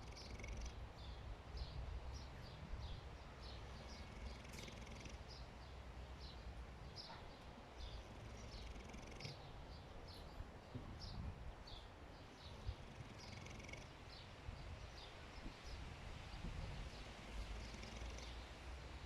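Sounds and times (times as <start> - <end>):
pig snoring: 0.0 - 0.8, 3.8 - 5.3, 8.0 - 9.4, 12.6 - 14.0, 17.2 - 18.5.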